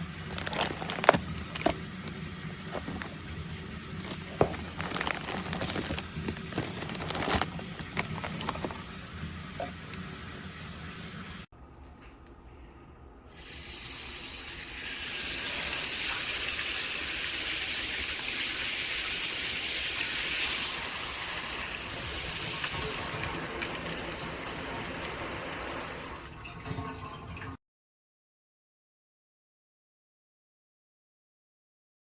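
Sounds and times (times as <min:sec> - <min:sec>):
shower head spraying water: 0:13.3 - 0:26.3.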